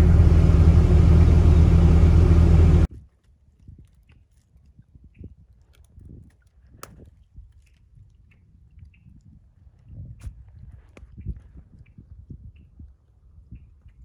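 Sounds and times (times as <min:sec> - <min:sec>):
heavy diesel engine running: 0:00.0 - 0:02.9.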